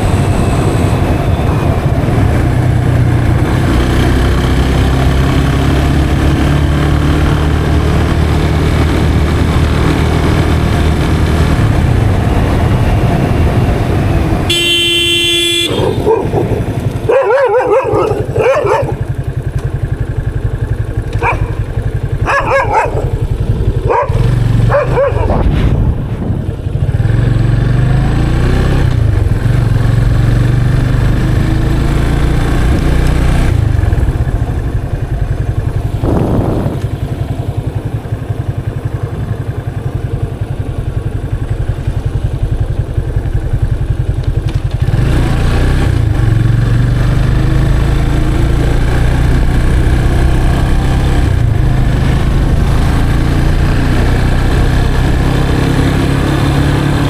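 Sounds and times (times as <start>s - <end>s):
motorcycle engine running: 0.0s - 57.0s
vehicle horn: 14.4s - 16.2s
dogs barking: 15.8s - 19.2s, 21.2s - 25.5s.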